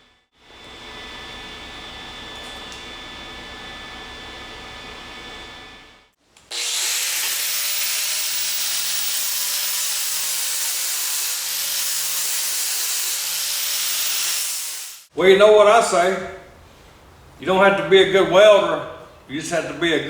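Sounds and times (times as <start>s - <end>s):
low shop hum: 0.0s - 20.0s
grinder grinding metal: 6.5s - 15.1s.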